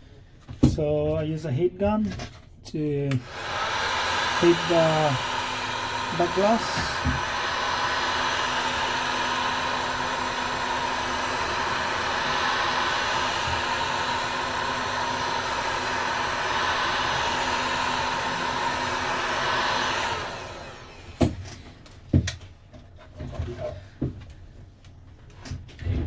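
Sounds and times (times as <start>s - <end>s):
heat gun blowing: 3.2s - 21.6s.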